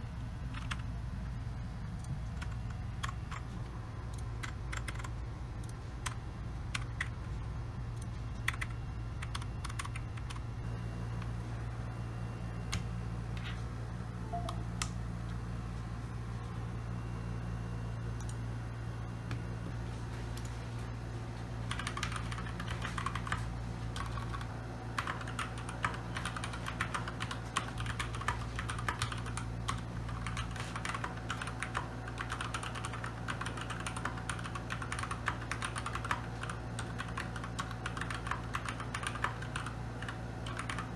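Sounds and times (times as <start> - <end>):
low hum: 0.0 - 40.9
mechanical keyboard typing: 0.5 - 0.9, 2.3 - 3.5, 4.4 - 5.1, 8.4 - 10.4, 21.7 - 40.9.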